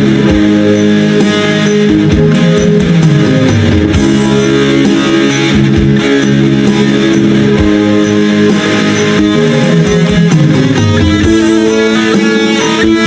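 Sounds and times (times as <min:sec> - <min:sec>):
guitar-led background music: 0:00.0 - 0:13.0.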